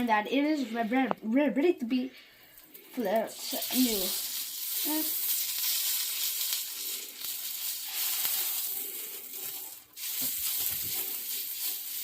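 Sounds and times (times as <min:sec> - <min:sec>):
pancake batter sizzling in skillet: 0:03.2 - 0:12.0.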